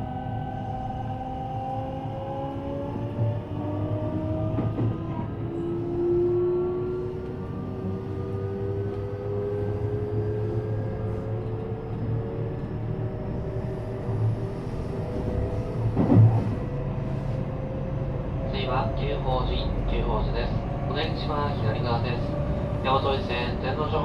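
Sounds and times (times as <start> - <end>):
wheels rumbling on rails: 0.0 - 24.0.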